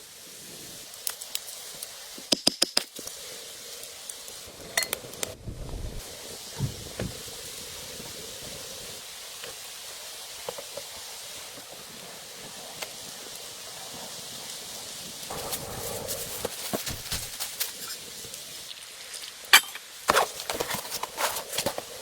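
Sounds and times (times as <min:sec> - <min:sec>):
steady rain hissing: 0:00.0 - 0:22.0.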